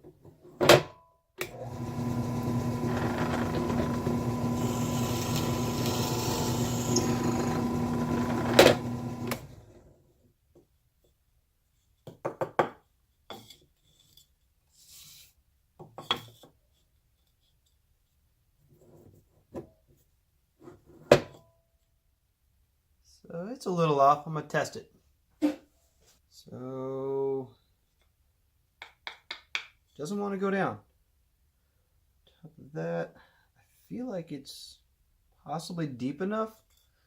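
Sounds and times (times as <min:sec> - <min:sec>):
drill press drilling into wood: 0:01.4 - 0:09.8.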